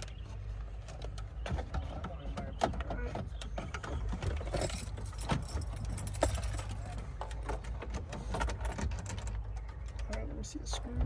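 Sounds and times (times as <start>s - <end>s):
metallic clicks and rattles of tools: 3.7s - 10.2s.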